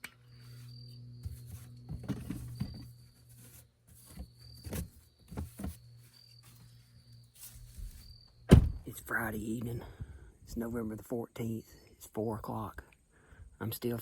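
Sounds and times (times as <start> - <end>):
insects trilling: 0.2 - 9.8
loud thump: 8.5 - 8.9.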